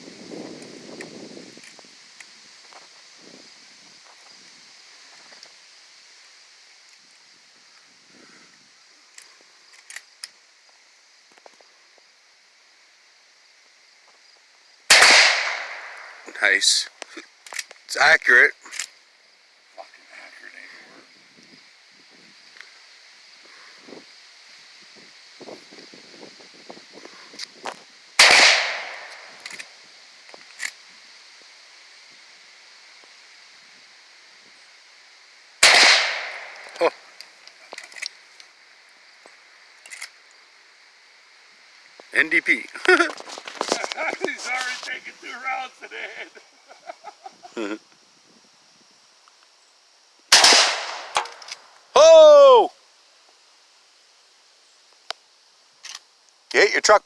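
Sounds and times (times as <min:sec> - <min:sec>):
quiet outdoor background: 0:00.0 - 0:57.0
gunshot with echo: 0:14.9 - 0:16.0, 0:28.2 - 0:29.3, 0:35.6 - 0:36.6, 0:50.3 - 0:51.3
small clicks: 0:39.8 - 0:40.2, 0:55.8 - 0:56.5.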